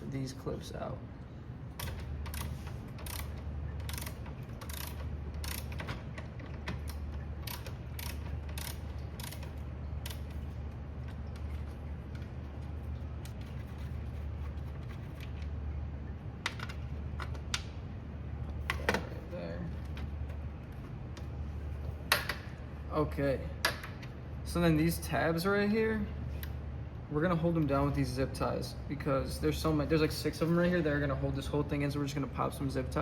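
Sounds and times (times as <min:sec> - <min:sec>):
low steady hum: 0:00.0 - 0:33.0
ratcheting screwdriver clicking: 0:01.8 - 0:06.0, 0:06.8 - 0:10.3.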